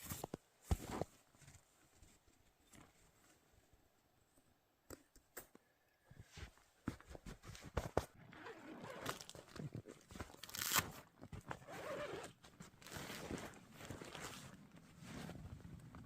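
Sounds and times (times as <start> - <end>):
nylon fabric rustling: 6.9 - 16.0
clicks and crunches of tent poles: 8.3 - 14.8.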